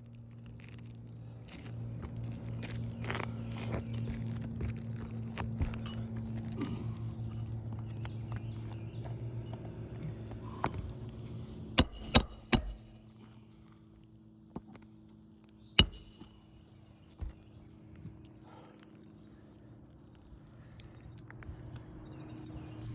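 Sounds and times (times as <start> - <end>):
low hum: 11.1 - 13.4, 15.8 - 16.6
hammer driving nails into shingles: 11.8 - 13.3, 15.8 - 16.4.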